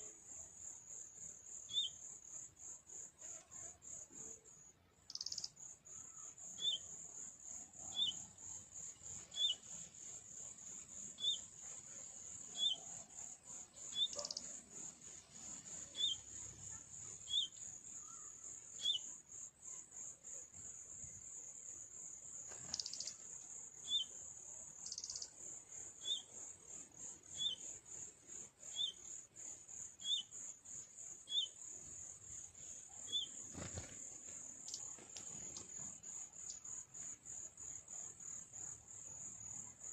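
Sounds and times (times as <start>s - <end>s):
insects trilling: 0.0s - 39.9s
bird chirping: 1.5s - 2.1s, 5.0s - 19.2s, 22.6s - 24.2s, 24.8s - 26.4s, 27.0s - 27.8s, 28.6s - 31.7s, 32.3s - 33.9s.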